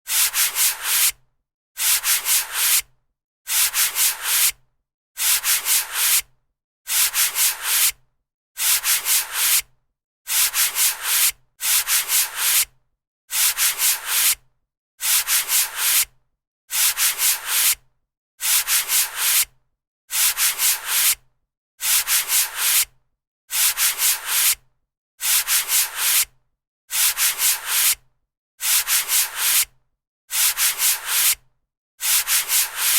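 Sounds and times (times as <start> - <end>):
eraser rubbing on paper: 0.1 - 1.1, 2.0 - 2.8, 3.9 - 4.4, 5.6 - 6.1, 10.6 - 11.2, 11.8 - 12.6, 15.3 - 16.0, 17.1 - 17.5, 18.6 - 19.4, 20.2 - 21.1, 21.8 - 22.8, 23.6 - 24.5, 25.2 - 26.2, 26.9 - 28.0, 28.6 - 29.6, 30.3 - 31.4, 32.0 - 32.9.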